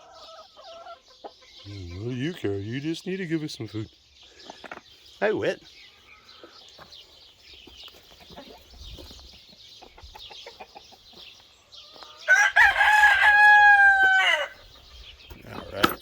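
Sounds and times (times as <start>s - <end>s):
chickens clucking softly: 0.0s - 2.5s, 5.9s - 12.3s
rooster crowing: 12.2s - 14.6s.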